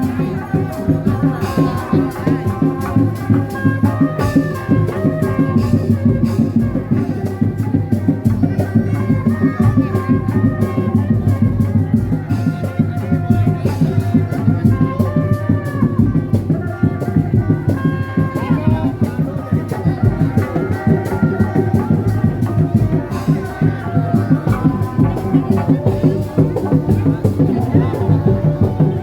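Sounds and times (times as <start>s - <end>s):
driving drumming: 0.0s - 29.0s.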